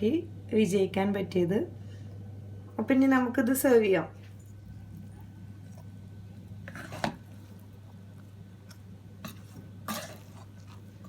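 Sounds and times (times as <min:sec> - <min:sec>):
low steady hum: 0:00.0 - 0:11.0
spoon scooping rice in a pot: 0:04.3 - 0:11.0
spoon scraping pot: 0:06.5 - 0:11.0.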